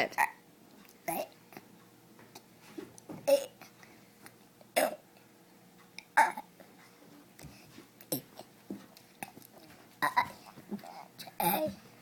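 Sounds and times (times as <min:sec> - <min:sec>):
girl burping: 0:03.3 - 0:03.6, 0:10.0 - 0:10.4, 0:11.3 - 0:11.8.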